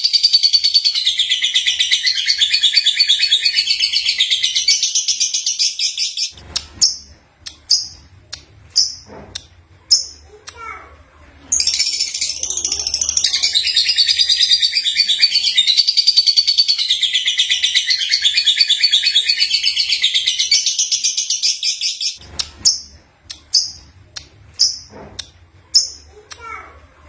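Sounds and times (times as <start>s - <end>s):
sharp bird chirps: 13.1s - 23.8s.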